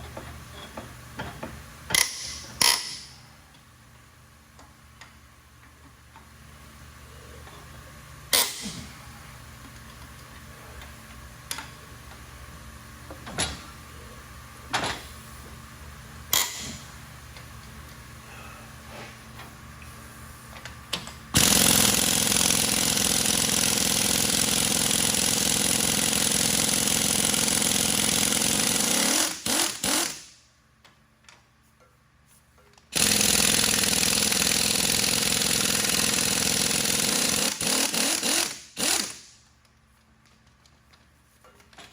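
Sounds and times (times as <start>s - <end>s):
power tool running: 21.4s - 30.3s, 32.9s - 39.4s.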